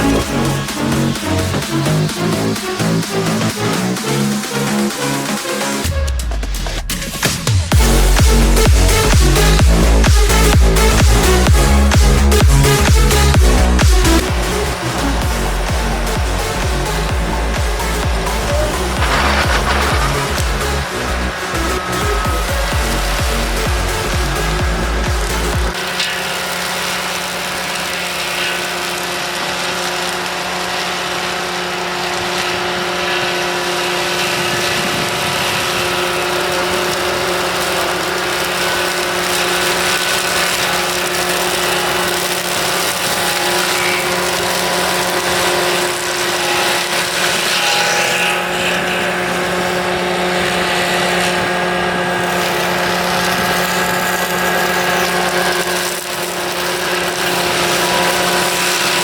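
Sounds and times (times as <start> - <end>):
engine running under load: 0.0 - 59.0
machine whine: 0.0 - 59.0.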